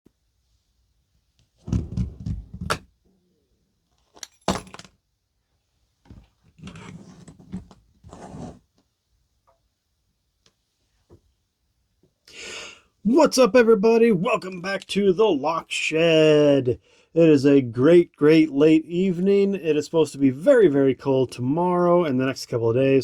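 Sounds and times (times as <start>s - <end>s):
keys and padlock jingling: 4.0s - 4.9s.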